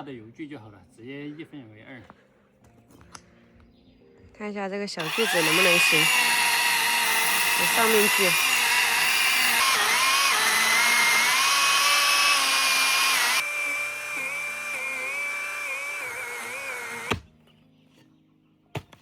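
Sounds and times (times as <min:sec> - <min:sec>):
electric saw cutting root: 0:05.0 - 0:17.3.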